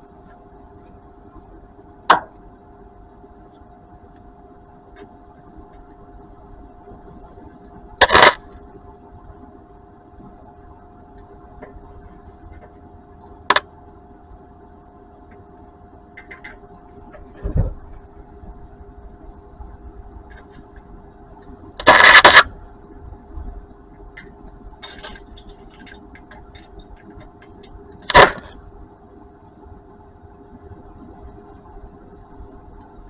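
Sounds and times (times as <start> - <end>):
steady low hum: 0.0 - 33.0
welding arc crackling: 8.0 - 8.6, 21.8 - 22.5, 24.2 - 28.6.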